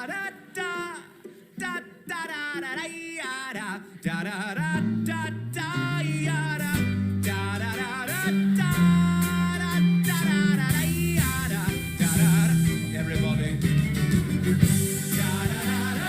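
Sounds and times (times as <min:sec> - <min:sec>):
person singing wordless refrain: 0:00.0 - 0:16.0
band with bass and guitar: 0:04.6 - 0:16.0.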